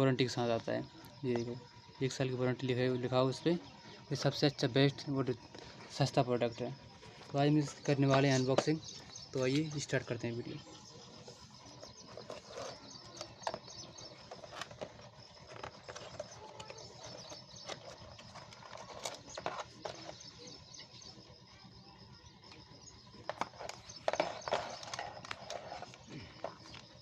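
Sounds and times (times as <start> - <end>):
cardboard and plastic packaging rustling: 11.8 - 20.5, 23.3 - 27.0.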